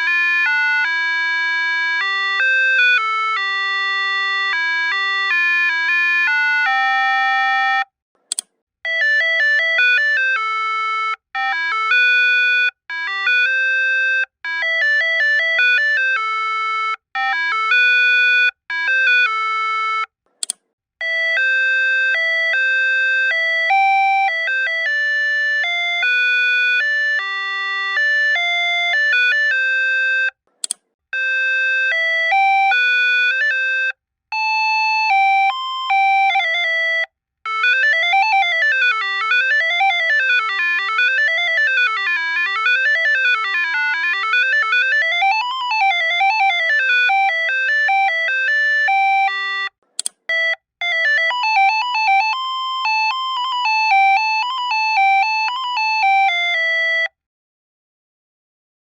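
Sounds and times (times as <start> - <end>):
clicks: 8.2 - 8.6, 20.3 - 20.7, 30.5 - 30.9, 49.8 - 50.3
electronic buzzer melody tunes: 21.0 - 30.3, 31.2 - 57.1.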